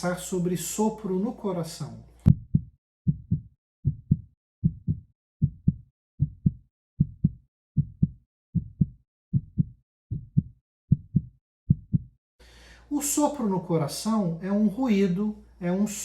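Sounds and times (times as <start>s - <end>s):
heartbeat thuds: 2.3s - 12.1s.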